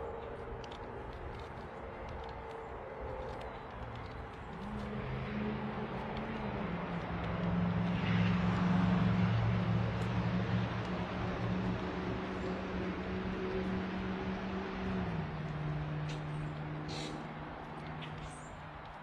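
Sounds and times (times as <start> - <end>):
vehicle engine approaching: 0.0 - 19.0.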